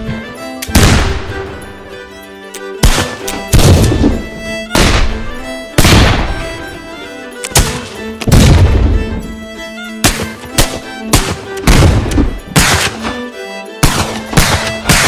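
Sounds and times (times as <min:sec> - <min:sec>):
background music: 0:00.0 - 0:15.0
gunshots with rumbling echo: 0:00.7 - 0:01.3, 0:02.8 - 0:05.2, 0:05.8 - 0:06.4, 0:07.6 - 0:09.1, 0:10.0 - 0:12.9, 0:13.8 - 0:15.0.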